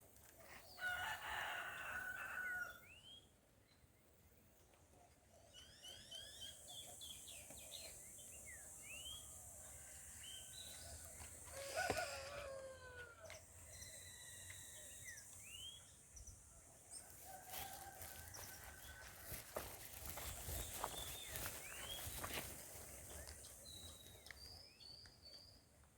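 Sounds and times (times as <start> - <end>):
birds chirping: 13.2 - 25.8.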